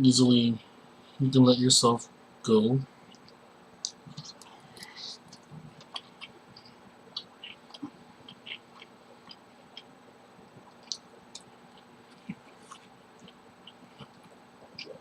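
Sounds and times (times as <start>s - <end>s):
close chewing of food: 4.1s - 15.0s.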